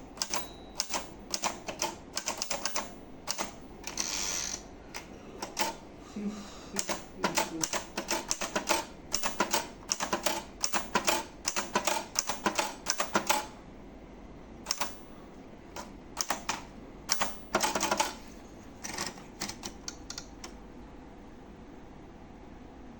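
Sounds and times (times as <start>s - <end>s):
manual typewriter key strikes: 0.2s - 4.6s, 6.8s - 13.5s, 14.7s - 15.1s, 15.8s - 18.2s.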